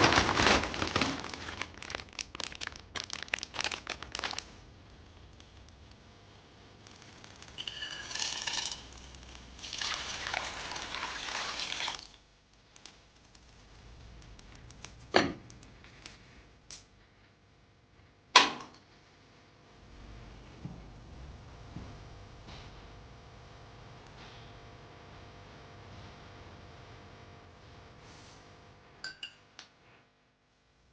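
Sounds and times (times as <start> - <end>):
rustling: 0.0 - 4.5.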